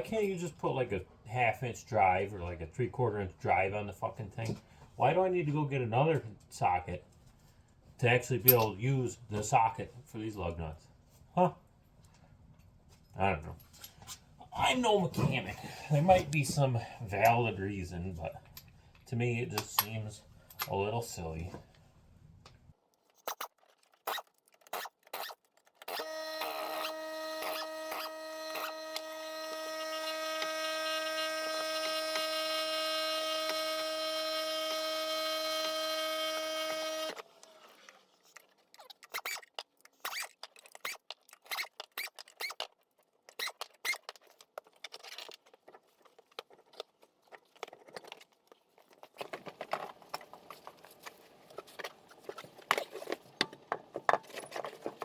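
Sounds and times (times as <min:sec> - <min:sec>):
power tool motor whining: 0:25.9 - 0:37.8.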